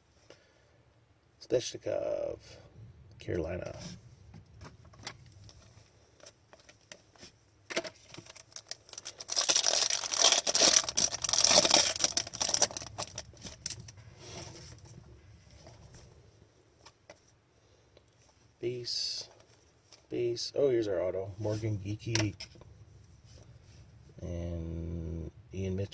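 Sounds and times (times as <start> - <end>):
cards clicking and rustling: 7.7 - 13.9
foil wrapper tearing and crinkling: 7.8 - 13.9.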